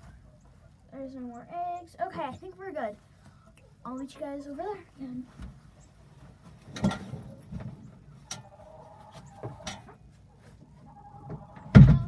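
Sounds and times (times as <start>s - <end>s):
knocks in wooden coop: 11.2s - 12.0s.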